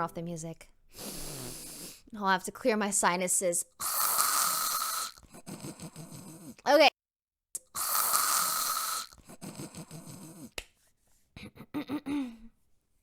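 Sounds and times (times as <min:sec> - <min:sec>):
woman snorting through nose: 0:00.9 - 0:02.1, 0:03.8 - 0:06.7, 0:07.7 - 0:10.6.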